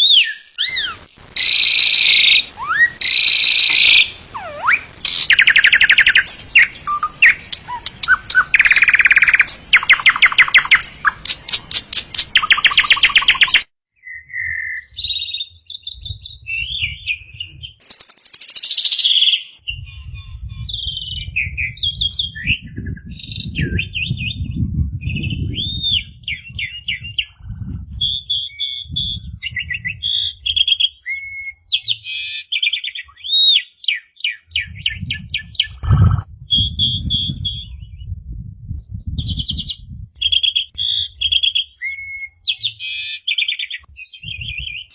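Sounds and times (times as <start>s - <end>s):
harsh rasping bird calls: 0.0s - 14.8s
bird chirps whistles and trills: 0.0s - 27.4s, 28.0s - 38.2s, 38.8s - 44.9s
low rumble: 34.6s - 40.2s.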